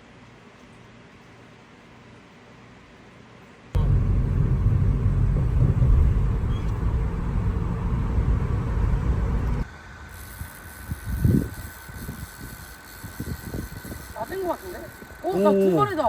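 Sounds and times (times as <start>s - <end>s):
loud low rumbling: 3.8s - 9.7s.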